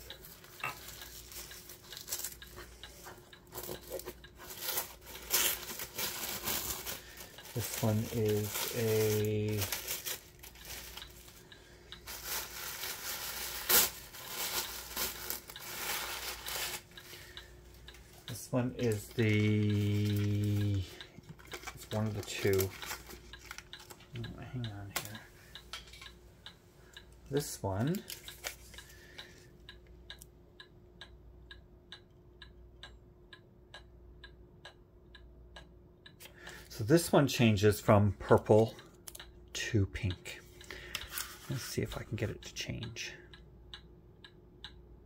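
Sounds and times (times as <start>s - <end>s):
faint clock ticking: 0.0s - 45.0s
low steady hum: 0.0s - 45.0s
packaging crinkling and rustling: 0.4s - 2.4s, 3.6s - 11.4s, 12.1s - 16.9s, 18.9s - 24.1s.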